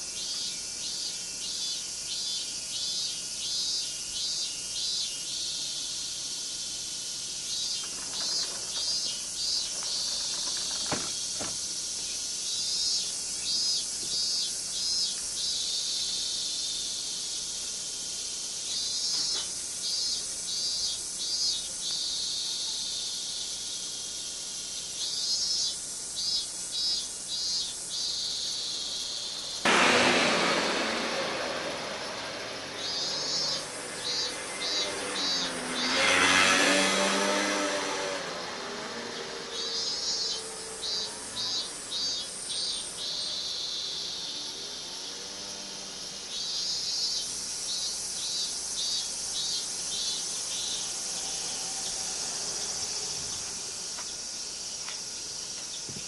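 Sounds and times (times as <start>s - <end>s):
cicadas droning: 0.0s - 56.0s
pulsed cicada call: 0.0s - 56.0s
loud rush of noise: 29.7s - 36.7s.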